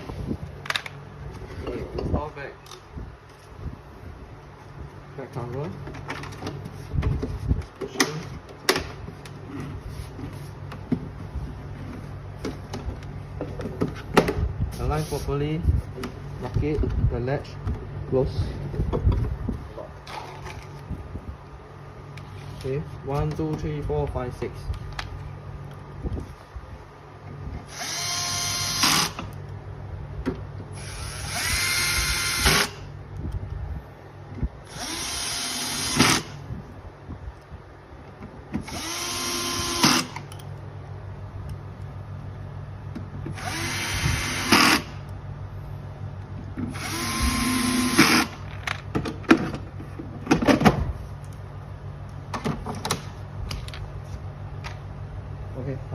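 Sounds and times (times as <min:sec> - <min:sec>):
cordless screwdriver driving screws: 0:38.6 - 0:40.2.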